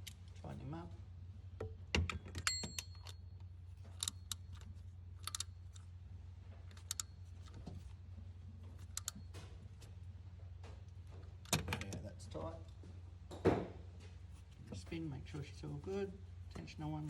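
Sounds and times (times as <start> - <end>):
steady low hum: 0.0 - 17.0
ratchet clicking: 5.2 - 5.8, 6.7 - 7.1.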